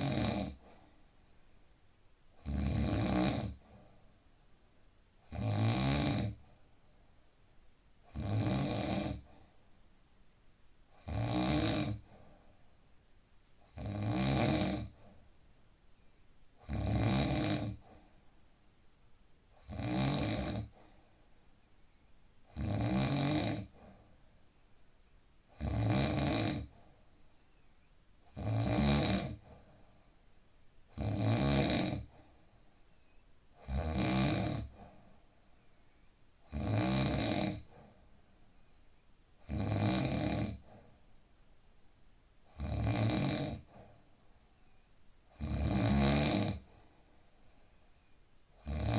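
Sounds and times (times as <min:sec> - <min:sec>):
man snoring: 0:00.0 - 0:00.6, 0:02.4 - 0:03.6, 0:05.3 - 0:06.4, 0:08.1 - 0:09.3, 0:11.0 - 0:12.0, 0:13.7 - 0:15.0, 0:16.6 - 0:17.8, 0:19.6 - 0:20.7, 0:22.5 - 0:23.8, 0:25.5 - 0:26.7, 0:28.4 - 0:29.6, 0:31.0 - 0:32.1, 0:33.6 - 0:34.8, 0:36.5 - 0:37.7, 0:39.4 - 0:40.7, 0:42.5 - 0:43.8, 0:45.3 - 0:46.7, 0:48.6 - 0:48.9.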